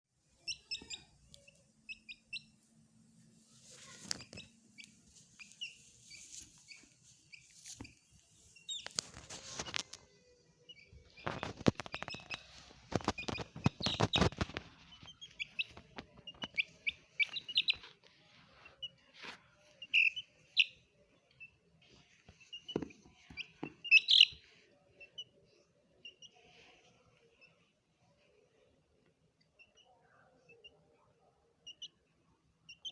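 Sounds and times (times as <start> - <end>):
chicks peeping: 0.4 - 2.6, 3.4 - 18.0, 19.6 - 26.7.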